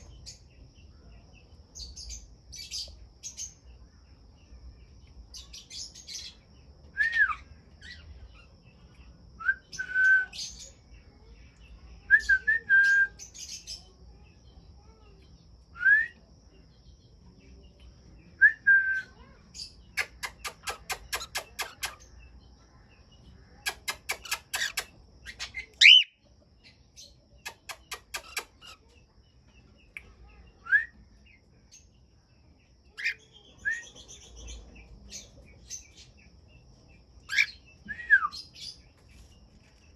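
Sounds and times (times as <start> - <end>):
bird whistles: 7.0 - 7.4, 23.7 - 26.1, 30.6 - 30.9, 33.0 - 33.9, 37.3 - 38.5
chattering bird chirps: 19.0 - 30.4, 32.9 - 39.9.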